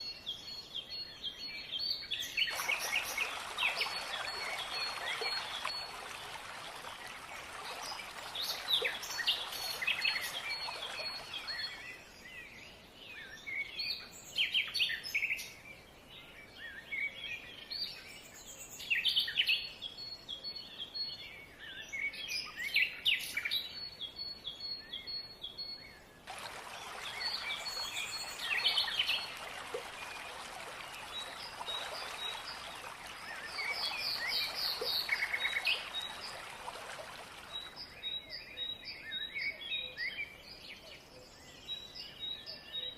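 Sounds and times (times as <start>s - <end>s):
songbirds chirping and singing: 0.0s - 42.9s
stream rushing: 2.5s - 12.0s, 26.3s - 38.0s.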